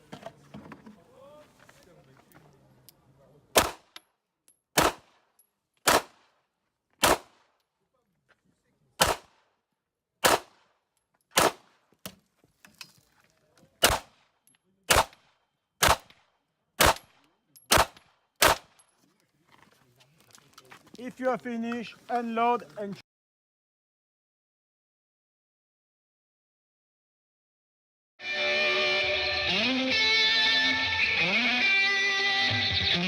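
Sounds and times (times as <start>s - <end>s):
handgun shots: 3.6s - 4.0s, 4.8s - 5.2s, 5.8s - 6.2s, 7.0s - 7.5s, 9.0s - 9.4s, 10.2s - 10.6s, 11.4s - 11.7s, 13.8s - 14.2s, 14.9s - 15.2s, 15.8s - 16.2s, 16.8s - 18.8s.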